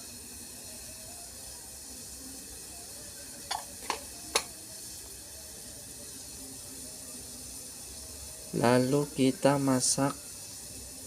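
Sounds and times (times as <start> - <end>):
boiling water hissing: 0.0 - 11.0
sharp knocks against pot: 3.5 - 4.5.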